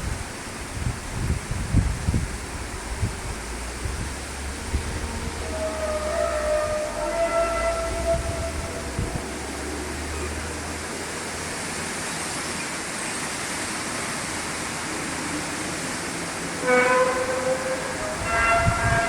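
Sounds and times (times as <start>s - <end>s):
outdoor background hiss: 0.0s - 19.0s
low rumble: 0.8s - 10.6s
loud drawn-out horn-like tone: 4.6s - 10.4s, 16.6s - 19.0s.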